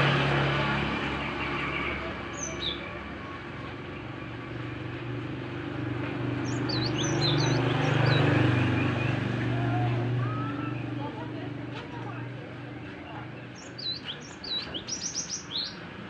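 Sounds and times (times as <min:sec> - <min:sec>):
young bird chirping: 0:06.4 - 0:08.7, 0:13.6 - 0:15.8.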